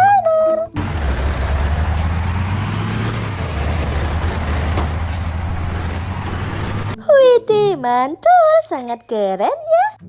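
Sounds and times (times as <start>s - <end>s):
vehicle engine rumbling: 0.7s - 7.0s.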